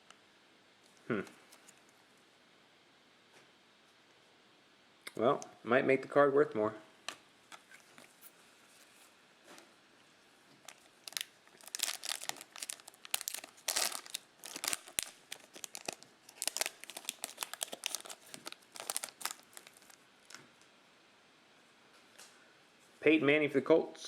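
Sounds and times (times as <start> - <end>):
wrapper tearing and crumpling: 10.6 - 20.4.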